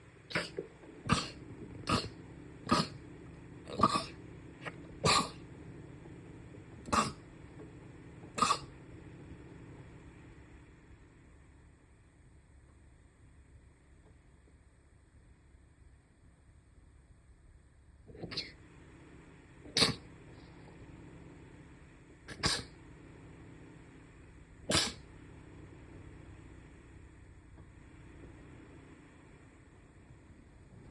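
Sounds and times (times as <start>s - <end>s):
person sneezing: 0.3s - 2.1s, 2.7s - 3.0s, 3.7s - 5.4s, 6.9s - 7.2s, 8.4s - 8.7s, 18.1s - 18.6s, 19.7s - 20.1s, 22.3s - 22.8s, 24.7s - 25.0s
short sharp sneezes: 3.8s - 5.4s, 19.7s - 20.1s, 22.3s - 22.8s, 24.7s - 25.1s.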